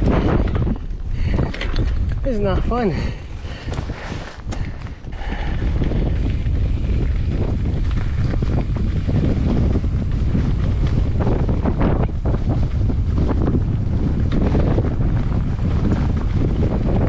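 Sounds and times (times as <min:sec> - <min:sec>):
bike rattling over rough trail: 0:00.0 - 0:17.0
wind buffeting microphone: 0:00.0 - 0:17.0.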